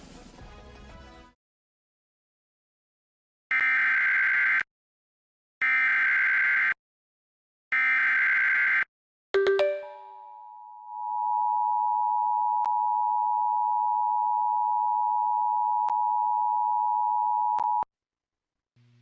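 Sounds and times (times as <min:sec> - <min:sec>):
two-tone alert signal: 0:09.4 - 0:10.3.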